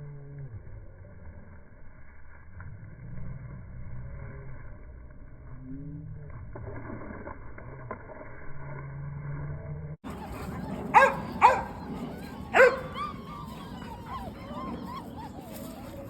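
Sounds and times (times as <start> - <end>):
puppies whimpering and yipping: 10.1 - 16.0
dog barking: 10.9 - 11.8, 12.5 - 13.1.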